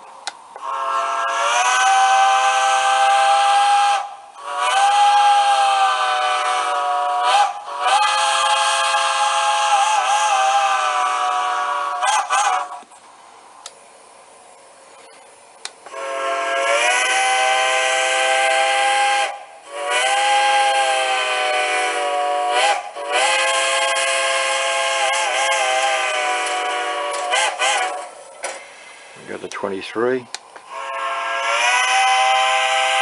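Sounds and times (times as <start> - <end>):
steam locomotive chime whistle: 0.6 - 12.8, 15.9 - 28.2, 30.7 - 33.0
faint hiss: 12.6 - 31.4.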